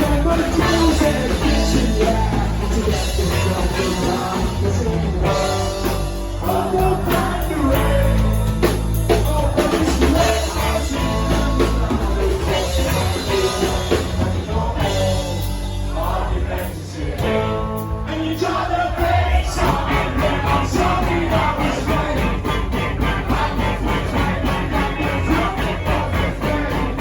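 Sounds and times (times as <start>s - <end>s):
person singing: 0.0s - 16.3s
rock band playing: 0.0s - 27.0s.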